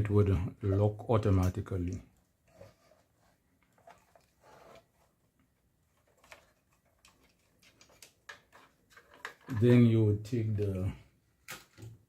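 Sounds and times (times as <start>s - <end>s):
faint clicks and taps from handling parts: 5.4s - 9.8s.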